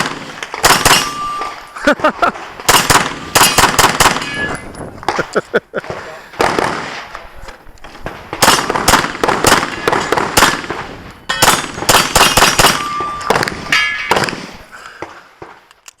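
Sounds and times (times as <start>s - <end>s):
rapid pistol fire: 0.0s - 1.2s, 2.7s - 4.2s, 5.9s - 7.0s, 8.3s - 14.6s.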